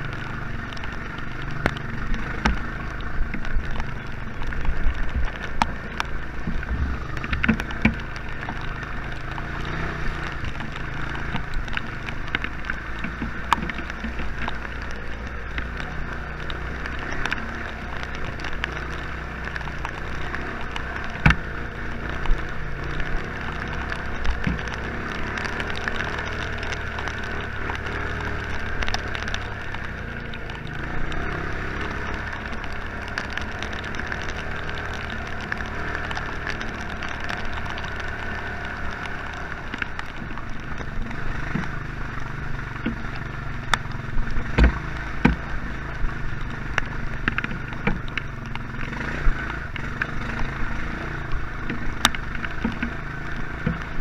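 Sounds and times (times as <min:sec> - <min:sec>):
atv engine running: 0:00.0 - 0:54.0
sharp knocks and clatter: 0:06.4 - 0:08.7, 0:44.5 - 0:45.4.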